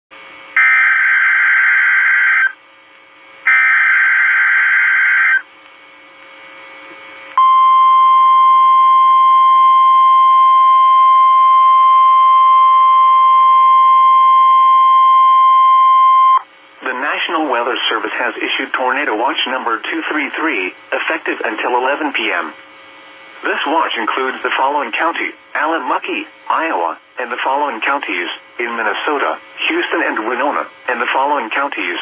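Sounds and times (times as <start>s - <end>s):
faint radio hiss: 16.7s - 32.0s.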